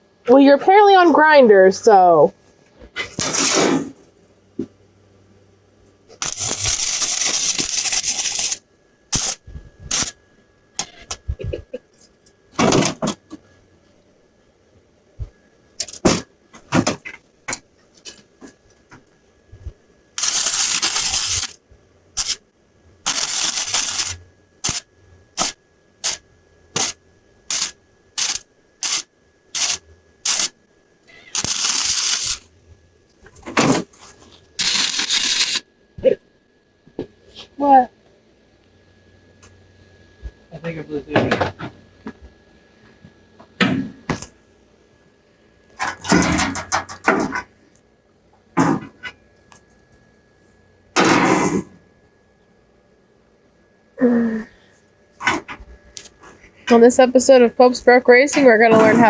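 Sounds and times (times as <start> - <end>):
welder arc crackling: 6.1 - 10.2, 20.2 - 21.6, 22.2 - 22.4, 23.0 - 30.6, 31.3 - 32.5, 34.6 - 35.7.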